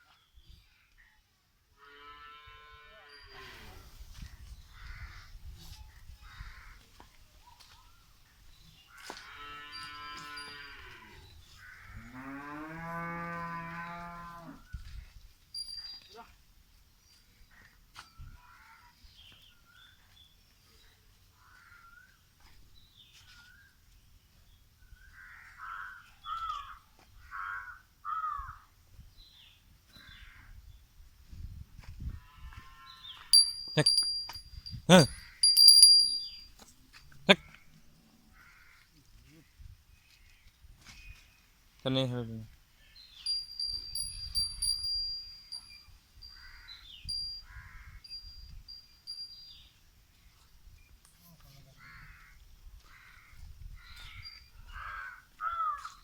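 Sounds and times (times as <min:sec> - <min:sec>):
crows cawing: 0:06.2 - 0:06.8, 0:21.4 - 0:22.0, 0:25.2 - 0:28.7, 0:38.3 - 0:38.9, 0:51.8 - 0:56.0
thin high-pitched chirp: 0:35.2 - 0:36.5.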